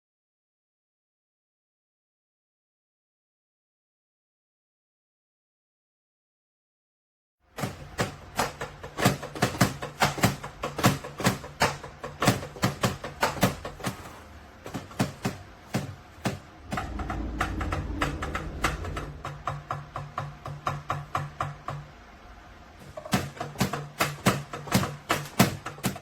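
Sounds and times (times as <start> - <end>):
drumsticks hitting electronic drum pads: 7.6 - 22.0, 22.8 - 26.0
low rumble: 16.5 - 20.1.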